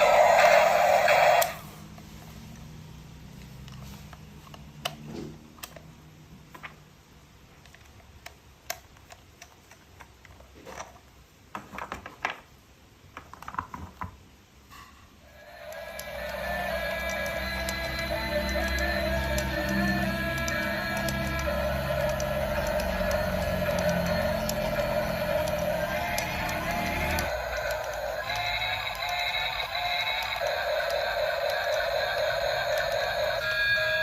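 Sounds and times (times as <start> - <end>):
plastic toy pieces clicking: 7.6 - 11.1, 15.6 - 33.0.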